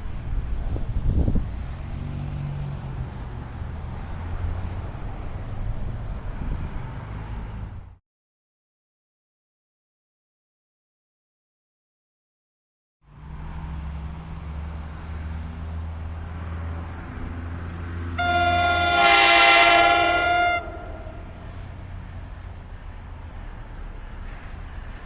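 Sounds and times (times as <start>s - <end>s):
low hum of a train: 0.0s - 8.0s, 13.1s - 25.0s
train horn blast: 17.9s - 21.8s.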